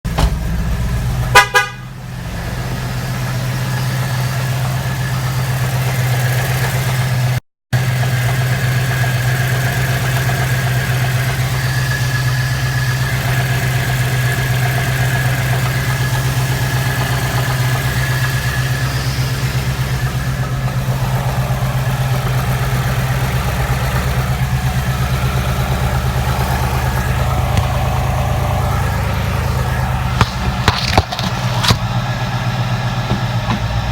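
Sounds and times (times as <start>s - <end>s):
car engine idling with knock: 0.1s - 33.9s
horn-like tone: 1.2s - 2.0s.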